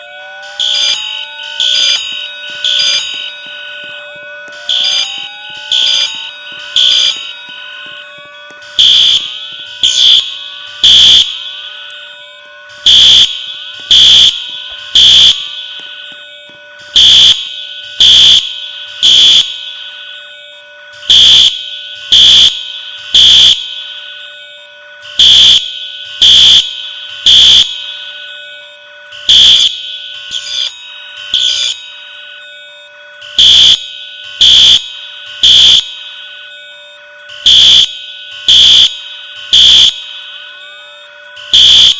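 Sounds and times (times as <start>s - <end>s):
fire alarm beeps: 0.0s - 41.9s.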